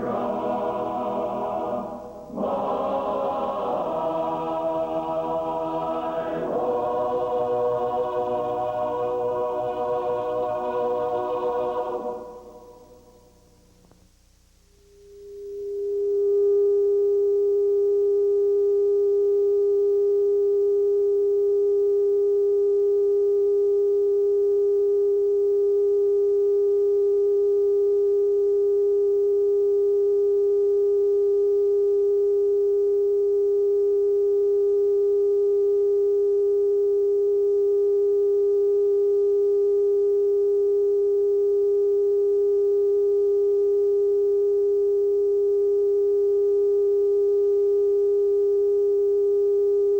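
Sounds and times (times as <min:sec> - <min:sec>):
steady test tone: 0:00.0 - 0:14.0.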